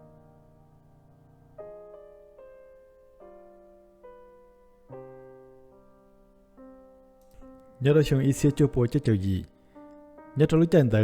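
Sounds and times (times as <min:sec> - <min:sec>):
slow piano chords: 0:00.0 - 0:11.0.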